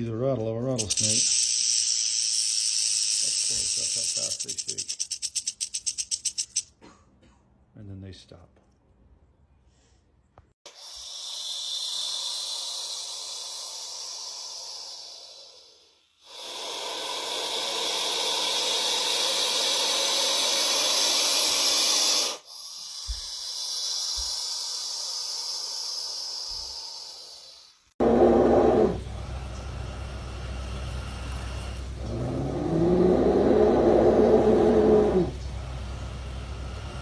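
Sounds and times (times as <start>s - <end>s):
snake hissing: 0.8s - 4.7s, 10.7s - 29.1s, 31.0s - 35.4s.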